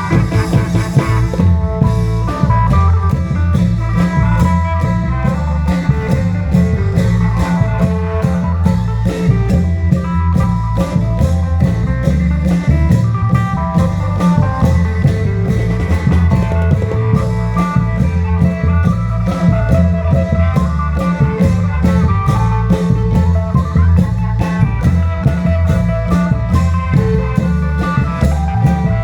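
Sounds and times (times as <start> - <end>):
heavy bass line: 0.0 - 29.0
long-drum ensemble dance beat: 0.0 - 29.0.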